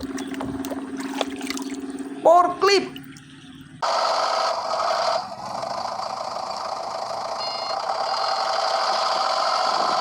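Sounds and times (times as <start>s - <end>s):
forklift engine running: 0.0s - 10.0s
short beep: 7.4s - 8.4s.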